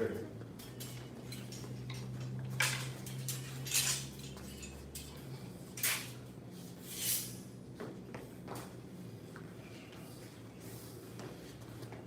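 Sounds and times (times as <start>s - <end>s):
butterfly knives swishing: 6.7s - 7.5s.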